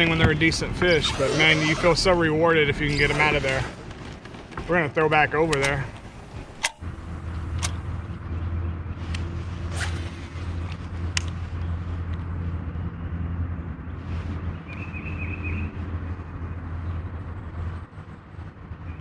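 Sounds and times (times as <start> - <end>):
sharp clicks: 5.4 - 8.0.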